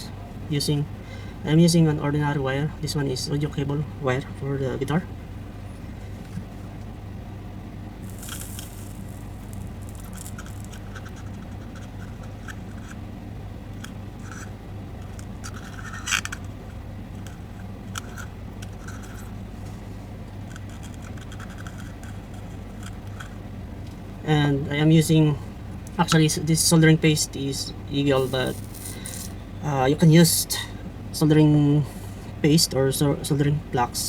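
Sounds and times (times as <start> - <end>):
steady low hum: 0.0 - 34.0
soldering iron scraping wire: 8.0 - 13.0, 28.2 - 29.4.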